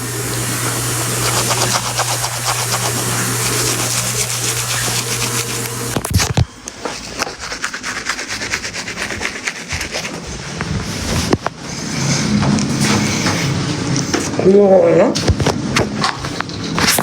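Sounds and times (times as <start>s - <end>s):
toothbrush scrubbing teeth: 0.3s - 6.2s, 6.8s - 14.2s.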